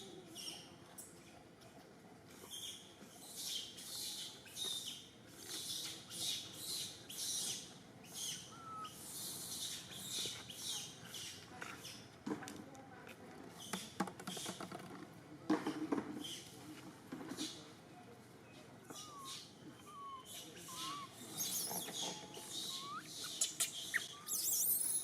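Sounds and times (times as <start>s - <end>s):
small animal squeaking: 5.5s - 12.0s, 18.8s - 25.0s.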